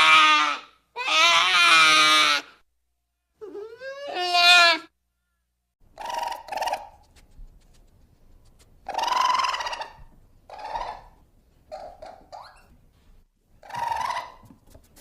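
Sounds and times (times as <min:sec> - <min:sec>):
creature raspy squawking calls: 0:05.9 - 0:07.0, 0:08.8 - 0:12.6, 0:13.6 - 0:14.5.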